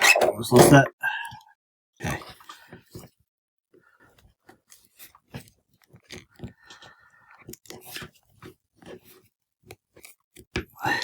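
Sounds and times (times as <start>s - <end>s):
plastic clicks and scrapes: 7.3s - 10.7s.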